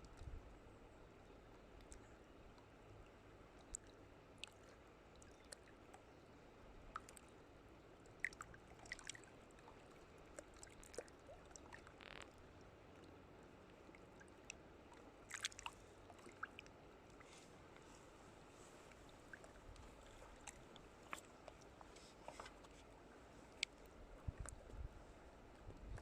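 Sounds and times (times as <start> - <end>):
faint steady hiss: 0.0 - 26.0
small clicks and ticks: 11.6 - 12.4.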